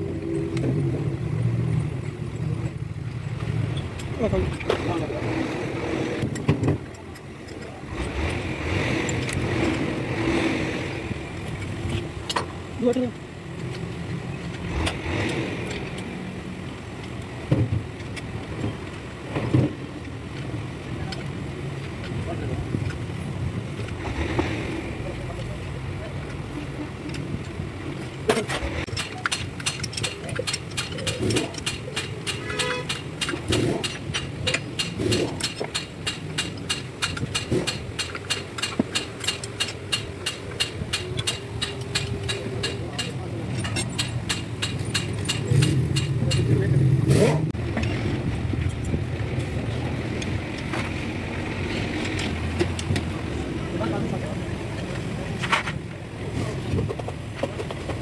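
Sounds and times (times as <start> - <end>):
metal tools clinking and knocking: 28.3 - 46.6
sharp clicks: 28.8 - 46.6
metallic ring: 32.0 - 33.2.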